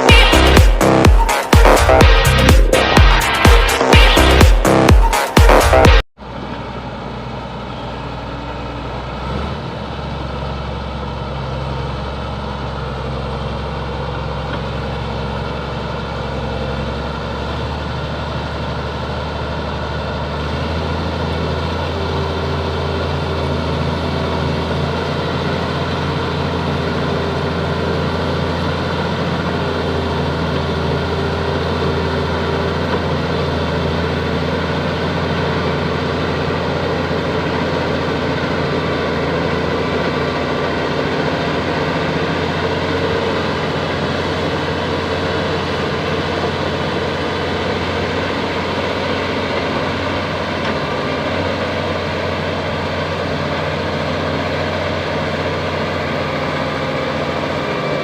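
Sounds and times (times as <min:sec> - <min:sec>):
bulldozer diesel engine running: 0:00.0 - 0:58.0.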